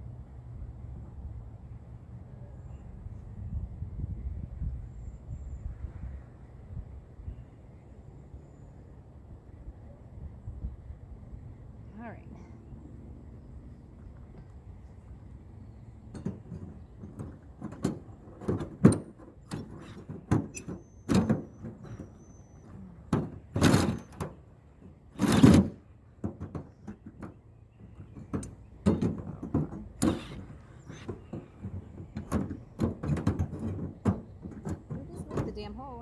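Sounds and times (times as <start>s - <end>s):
stove pipe knocking and scraping: 16.1s - 35.7s.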